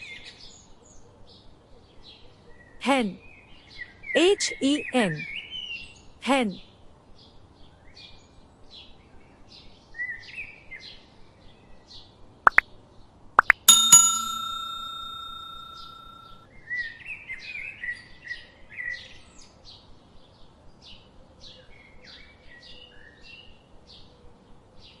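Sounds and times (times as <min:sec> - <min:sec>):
bell-like chime: 0:13.5 - 0:16.3.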